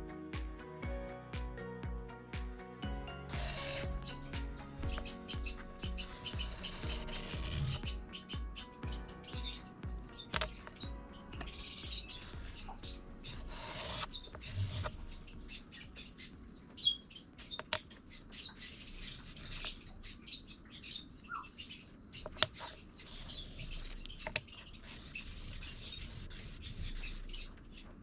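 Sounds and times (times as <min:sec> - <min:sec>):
birds chirping: 0:03.1 - 0:28.0
rubbing and scraping: 0:03.3 - 0:08.0, 0:11.4 - 0:15.1, 0:22.3 - 0:27.5.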